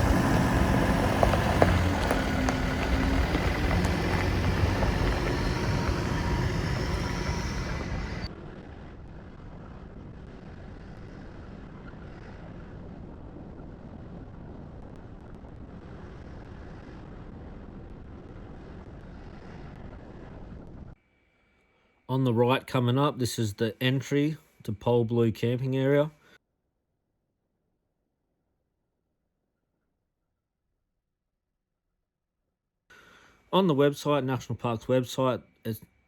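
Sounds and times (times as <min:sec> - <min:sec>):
car road noise: 0:00.0 - 0:08.3
loud rushing noise: 0:00.0 - 0:08.3.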